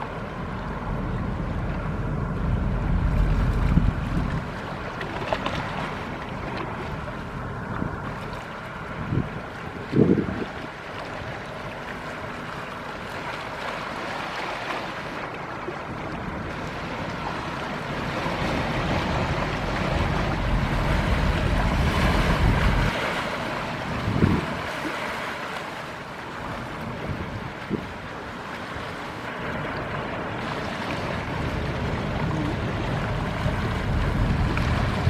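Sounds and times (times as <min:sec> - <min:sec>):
waves washing and splashing: 0:00.0 - 0:35.0
wind buffeting microphone: 0:00.8 - 0:04.6, 0:08.9 - 0:10.7, 0:18.1 - 0:25.0, 0:30.4 - 0:35.0.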